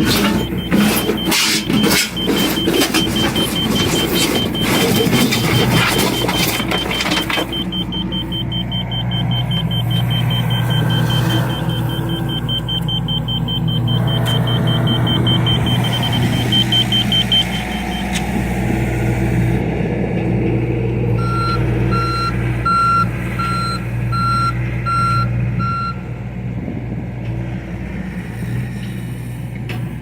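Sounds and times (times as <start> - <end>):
rapid high-pitched beeping: 0.0 - 18.1
diesel engine running: 0.0 - 30.0.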